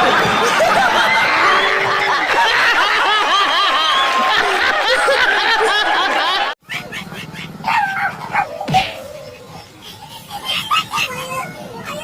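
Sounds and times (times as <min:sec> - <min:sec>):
crowd laughing: 0:00.0 - 0:08.4, 0:09.2 - 0:11.3.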